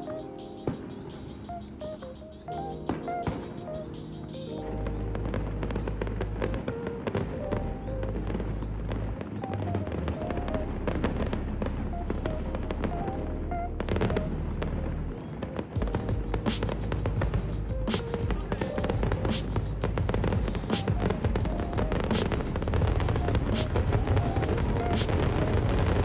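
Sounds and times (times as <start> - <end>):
crackling percussion: 0.0 - 26.0
background music with bass line: 15.8 - 26.0.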